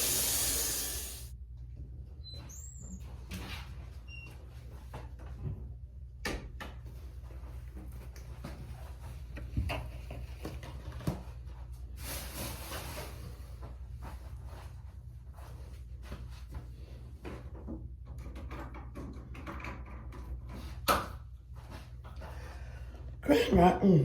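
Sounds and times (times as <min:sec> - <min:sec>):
hiss: 0:00.0 - 0:01.3.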